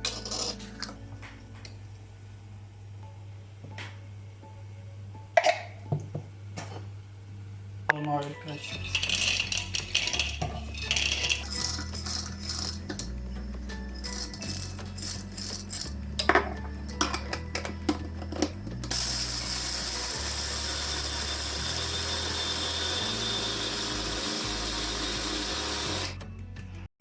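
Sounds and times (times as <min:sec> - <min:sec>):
nut pieces rattling: 0:08.5 - 0:12.9, 0:14.0 - 0:15.9
electric chopper motor running: 0:18.8 - 0:26.2.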